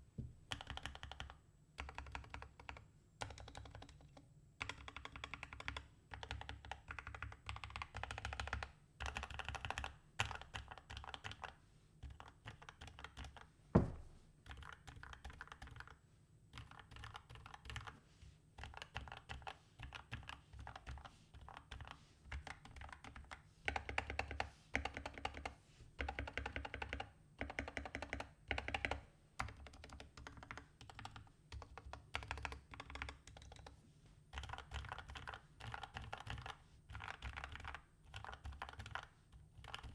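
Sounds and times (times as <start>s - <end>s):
mechanical keyboard typing: 0.5s - 13.4s, 16.6s - 18.0s, 18.6s - 39.9s
loud thump: 13.8s - 14.2s.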